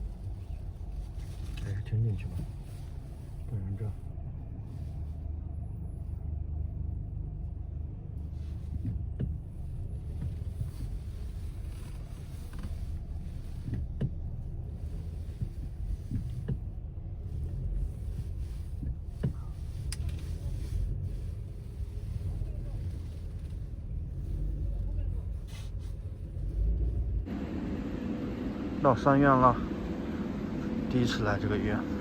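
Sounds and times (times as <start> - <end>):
vehicle rumbling in motion: 0.0 - 32.0
light clicks and knocks: 13.6 - 14.4, 15.3 - 16.8.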